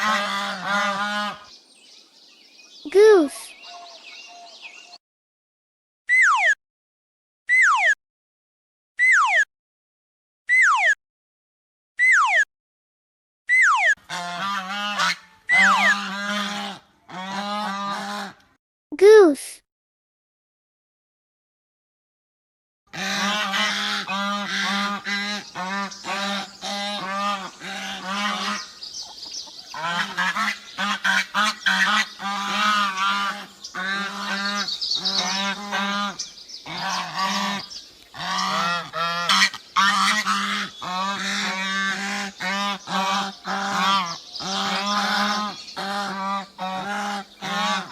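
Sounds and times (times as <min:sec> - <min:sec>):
goose honking: 0:00.0 - 0:01.5, 0:13.8 - 0:18.4, 0:22.9 - 0:28.8, 0:29.4 - 0:47.9.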